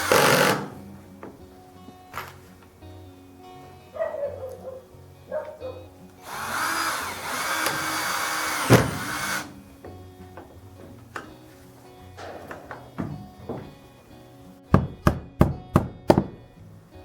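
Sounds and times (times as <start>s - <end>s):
power tool running: 0.0s - 0.9s, 6.2s - 9.6s
background music: 0.0s - 17.0s.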